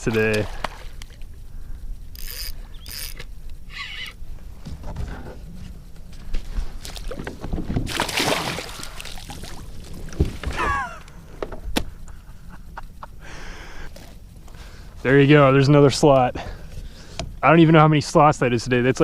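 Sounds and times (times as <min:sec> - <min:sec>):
water splashing: 0:00.0 - 0:01.0, 0:06.8 - 0:10.8.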